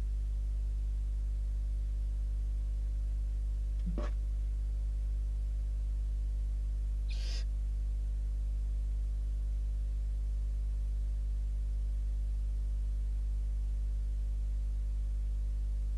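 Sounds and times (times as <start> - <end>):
steady electrical hum: 0.0 - 15.9
owl chick calling: 7.0 - 7.5
owl chick hissing: 7.0 - 7.5.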